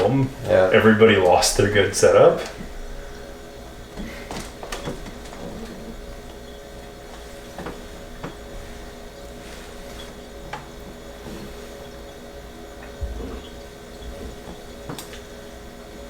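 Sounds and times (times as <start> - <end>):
mechanical hum: 0.0 - 16.0.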